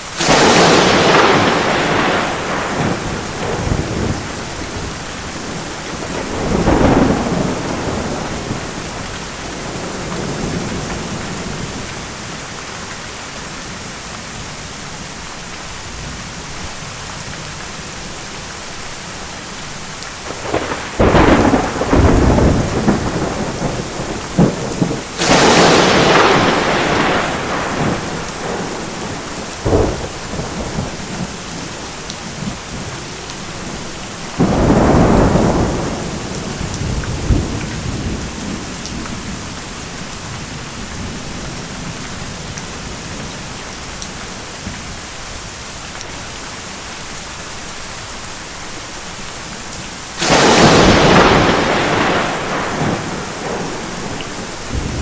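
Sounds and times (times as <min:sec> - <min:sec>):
heavy rain: 0:00.0 - 0:55.0
thunder claps: 0:00.2 - 0:12.0, 0:20.2 - 0:43.4, 0:50.2 - 0:55.0.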